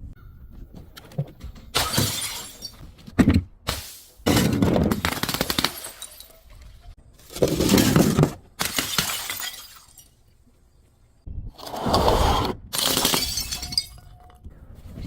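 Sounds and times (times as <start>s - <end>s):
glass shattering and crunching: 1.8s - 2.9s, 3.7s - 6.7s, 7.4s - 10.2s, 12.8s - 14.4s.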